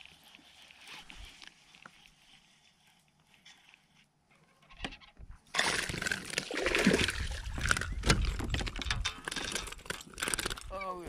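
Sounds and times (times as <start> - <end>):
water splashing and sloshing: 5.4 - 10.6
knocks and clatter on kayak: 7.2 - 10.7.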